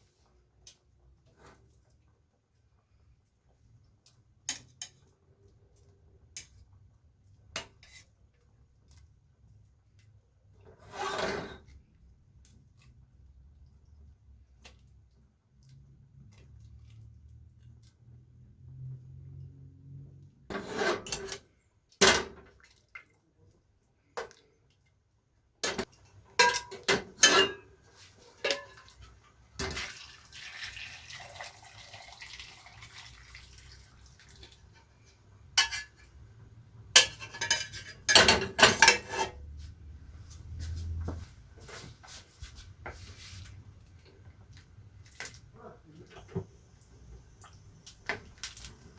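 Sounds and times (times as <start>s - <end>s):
metal utensils clattering on pots: 20.5s - 22.5s, 25.6s - 30.0s, 35.5s - 36.2s, 36.9s - 39.5s.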